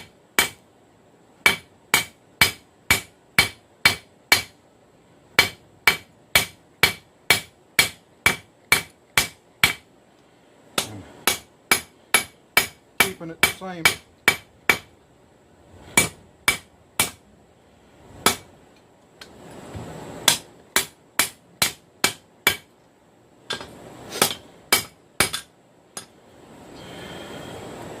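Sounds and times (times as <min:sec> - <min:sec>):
hammer striking hot steel on anvil: 0:00.0 - 0:00.6, 0:01.4 - 0:04.6, 0:05.4 - 0:09.8, 0:10.8 - 0:14.9, 0:16.0 - 0:17.2, 0:18.2 - 0:18.5, 0:20.2 - 0:22.7, 0:23.5 - 0:26.1.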